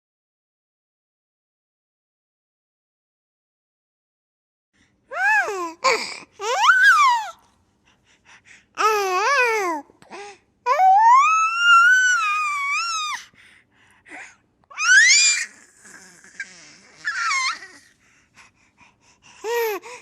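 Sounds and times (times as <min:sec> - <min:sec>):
baby laughing and squealing: 0:06.4 - 0:07.4, 0:10.7 - 0:13.2, 0:14.7 - 0:17.9.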